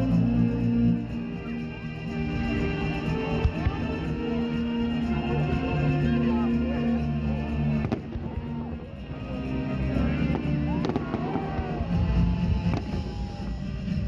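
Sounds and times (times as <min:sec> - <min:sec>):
music: 0:00.0 - 0:14.0
fireworks bangs: 0:07.8 - 0:08.6, 0:10.2 - 0:13.6.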